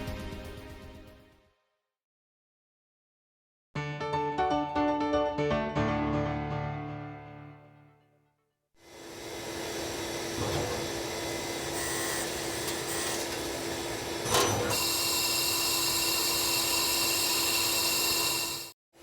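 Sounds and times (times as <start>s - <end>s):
lathe machining whir: 8.9s - 18.7s
high-pitched whine: 14.8s - 18.7s.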